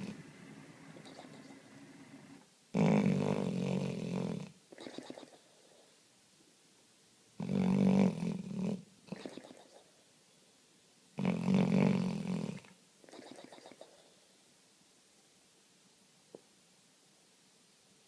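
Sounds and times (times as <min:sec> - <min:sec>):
dog snoring: 0:00.0 - 0:04.6, 0:07.4 - 0:09.3, 0:11.2 - 0:12.7.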